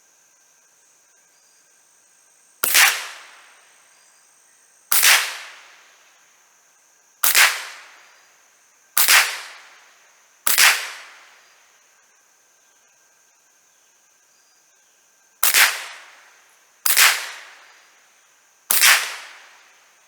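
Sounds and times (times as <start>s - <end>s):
insects buzzing: 0.0s - 20.0s
rifle shots echoing: 2.6s - 3.5s, 4.9s - 5.7s, 7.2s - 8.0s, 9.0s - 9.8s, 10.5s - 11.2s, 15.4s - 16.2s, 16.9s - 17.7s, 18.7s - 19.7s.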